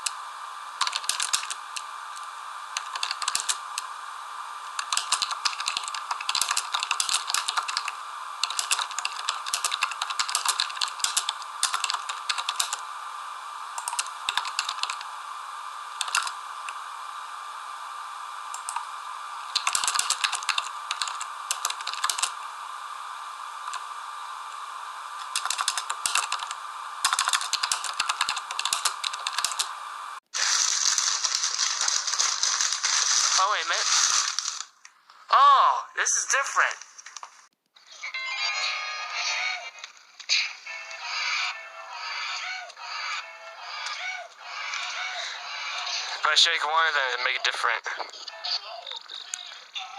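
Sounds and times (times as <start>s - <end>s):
steady hiss: 0.0s - 37.6s
rapid typing-like clicking: 0.8s - 1.8s, 2.8s - 3.6s, 4.8s - 12.8s, 13.8s - 15.0s, 16.0s - 16.4s, 18.5s - 18.8s, 19.6s - 22.3s, 25.2s - 29.7s
bright hissy rattling: 30.3s - 34.7s.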